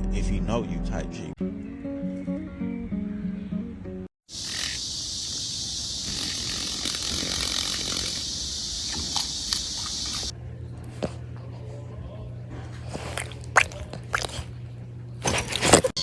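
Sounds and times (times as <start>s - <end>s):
cicada buzzing: 4.3s - 10.3s.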